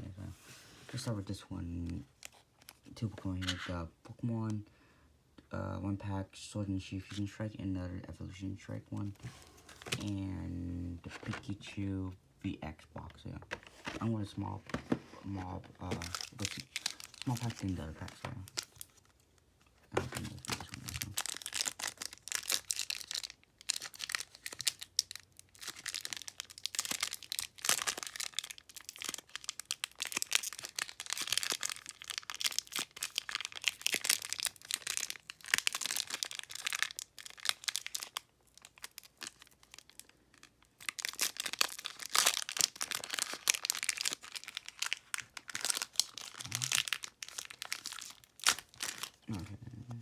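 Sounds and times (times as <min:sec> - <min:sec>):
foil wrapper crinkling and tearing: 0:14.8 - 0:19.2, 0:20.0 - 0:49.3.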